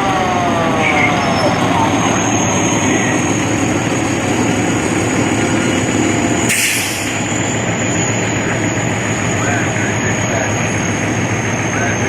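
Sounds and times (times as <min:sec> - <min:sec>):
heavy diesel engine passing: 0:00.0 - 0:12.0
air hiss burst: 0:06.5 - 0:07.2.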